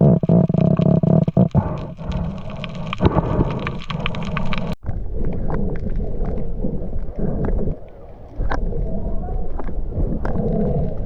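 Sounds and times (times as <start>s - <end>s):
dense crackling clicks: 0.0s - 11.0s
muffled underwater rumbling: 0.0s - 11.0s.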